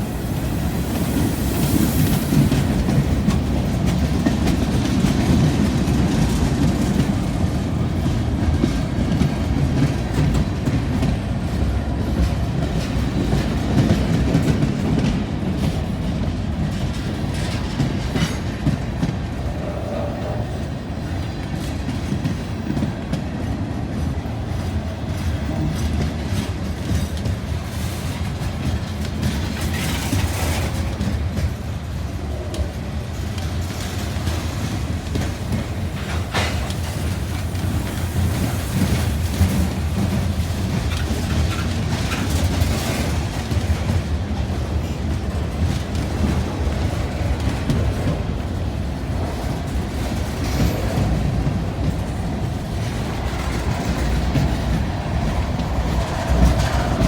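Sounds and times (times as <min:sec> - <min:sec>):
freight train rumbling past: 0:00.0 - 0:57.0
wheels clicking over rail joints: 0:24.0 - 0:57.0.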